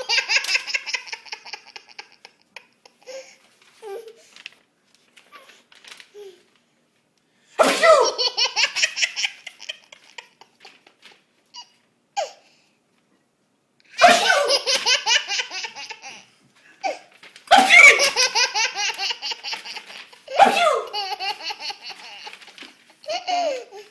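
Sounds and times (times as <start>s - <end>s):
toddler laughing: 0.0s - 3.3s, 7.6s - 10.9s, 14.0s - 23.9s
man sneezing: 7.6s - 8.2s, 14.0s - 14.6s, 17.5s - 18.0s, 20.4s - 21.0s.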